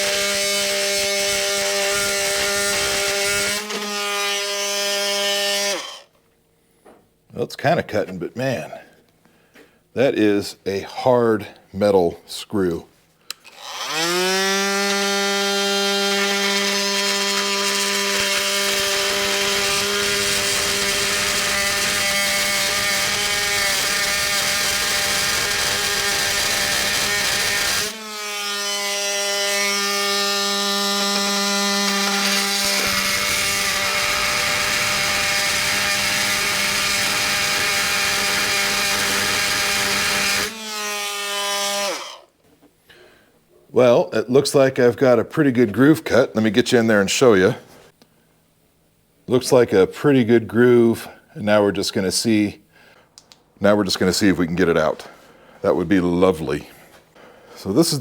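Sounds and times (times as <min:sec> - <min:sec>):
blade grinding metal: 0:00.0 - 0:06.1, 0:13.5 - 0:42.2
oscillating multi-tool motor hum: 0:00.0 - 0:06.1, 0:13.5 - 0:42.3.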